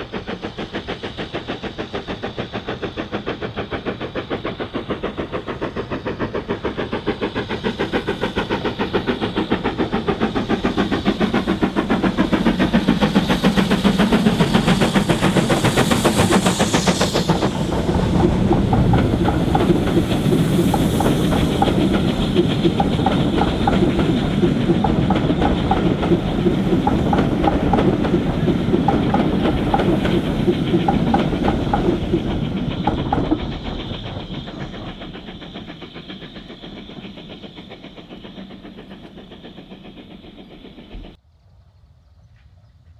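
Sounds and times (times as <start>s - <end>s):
steam train chuffing: 0.0s - 41.2s
wheels clicking over rail joints: 7.7s - 41.2s.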